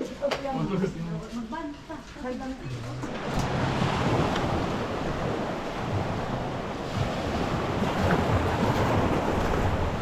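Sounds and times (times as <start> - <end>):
sea surf washing ashore: 3.0 - 10.0
wind buffeting microphone: 3.2 - 10.0.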